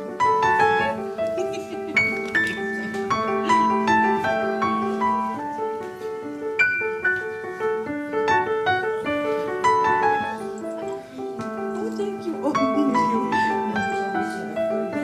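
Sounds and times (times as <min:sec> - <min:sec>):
solo piano melody: 0:00.0 - 0:15.0.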